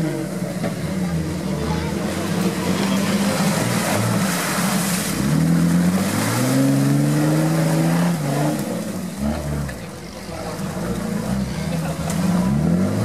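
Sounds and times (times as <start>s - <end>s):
diesel engine revving: 0.0s - 13.0s.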